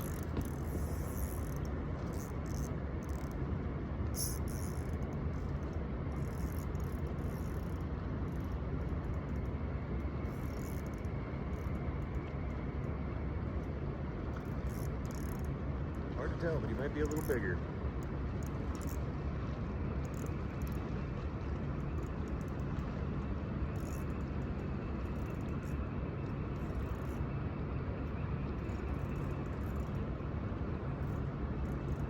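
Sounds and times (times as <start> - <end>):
fishing reel buzzing: 0.0 - 3.4, 4.1 - 9.5, 10.2 - 12.2, 14.3 - 15.5, 17.0 - 17.4, 18.4 - 19.0, 20.0 - 20.8, 23.7 - 24.4, 25.0 - 25.8, 26.6 - 27.2, 28.6 - 30.0, 31.0 - 32.0
steady low rumble: 0.0 - 32.0.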